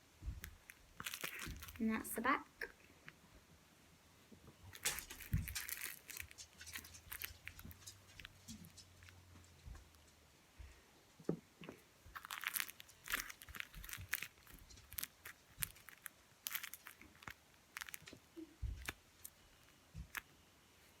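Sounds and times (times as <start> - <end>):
paper and tape crinkling: 0.3 - 2.3, 4.6 - 10.2, 12.1 - 20.3.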